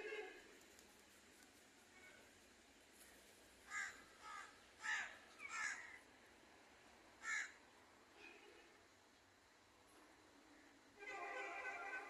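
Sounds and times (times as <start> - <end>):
crow cawing: 3.7 - 6.0, 7.2 - 7.6.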